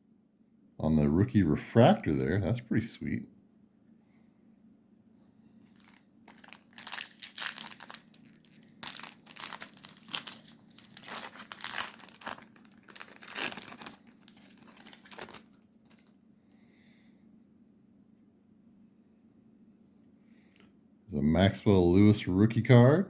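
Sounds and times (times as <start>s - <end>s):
foil wrapper crinkling: 5.7s - 16.2s.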